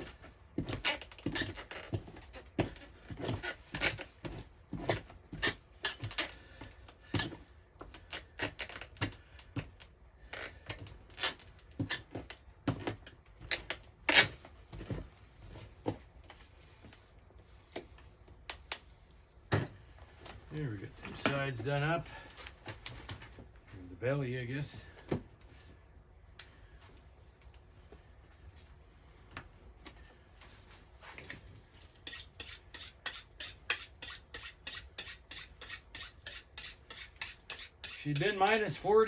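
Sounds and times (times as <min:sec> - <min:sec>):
knife scraping a pelt: 0:31.9 - 0:38.9.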